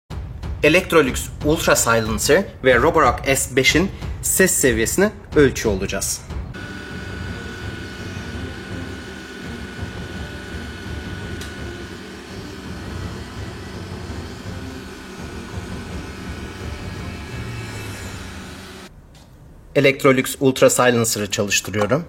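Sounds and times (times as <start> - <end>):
thin high whine: 6.6 - 18.9
vacuum cleaner running: 6.6 - 18.9.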